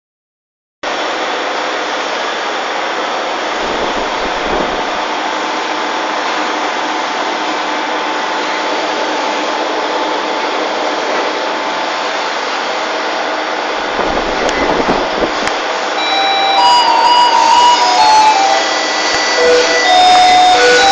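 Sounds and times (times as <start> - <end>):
steady hissing machine noise: 0.9 - 20.9
low rumble: 3.6 - 5.3, 13.8 - 15.7
short musical notes: 16.0 - 20.9.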